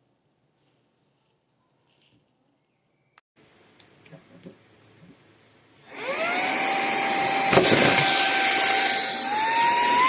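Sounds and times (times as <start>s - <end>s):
handheld vacuum cleaner whine: 5.8s - 10.0s.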